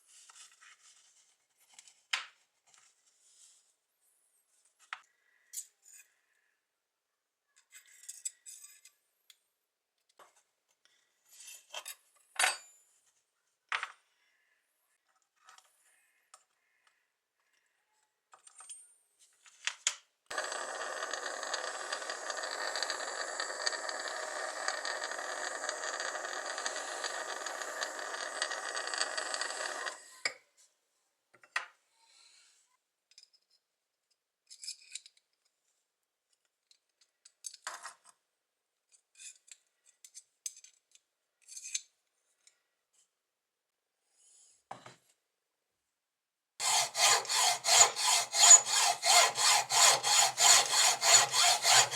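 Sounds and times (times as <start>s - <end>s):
power tool grinding metal: 20.3s - 30.0s, 46.6s - 51.9s.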